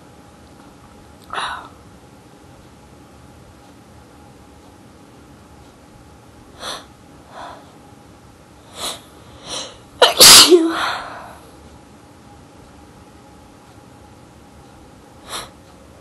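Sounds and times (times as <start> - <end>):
person sneezing: 10.0 - 11.1.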